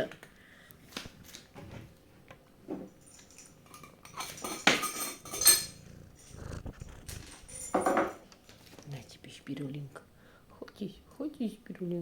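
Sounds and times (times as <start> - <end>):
objects clicking and rattling: 2.9 - 6.4, 7.0 - 8.8
hard objects clinking: 3.0 - 8.2.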